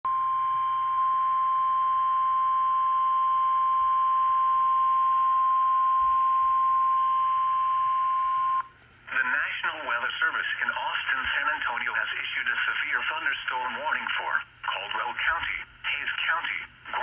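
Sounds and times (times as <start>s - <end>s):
steady alarm tone: 0.1s - 8.7s.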